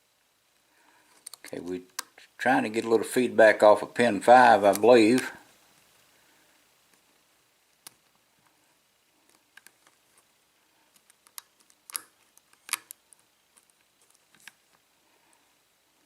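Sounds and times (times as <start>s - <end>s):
lock pick clicking in padlock: 11.3s - 13.0s.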